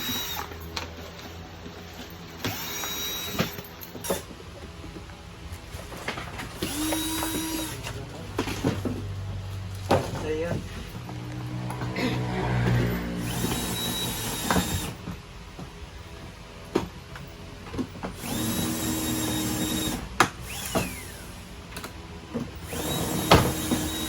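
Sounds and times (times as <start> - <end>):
power drill whining: 0.0 - 0.8, 2.4 - 4.2, 6.6 - 8.0, 12.8 - 15.0, 18.2 - 21.6, 22.6 - 24.0.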